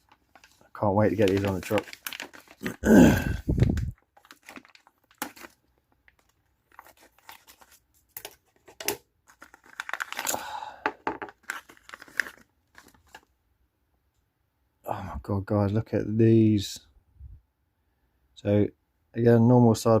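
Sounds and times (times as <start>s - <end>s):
plastic packaging crinkling and tearing: 0.0s - 13.3s.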